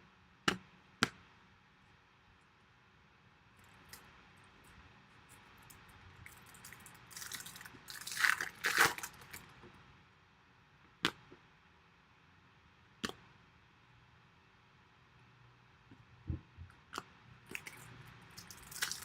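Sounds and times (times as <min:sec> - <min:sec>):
foil wrapper crinkling and tearing: 0:06.2 - 0:09.5, 0:17.5 - 0:19.0.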